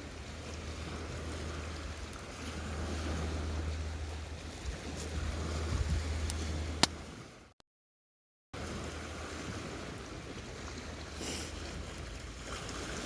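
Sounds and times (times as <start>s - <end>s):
wind buffeting microphone: 0.0s - 7.4s.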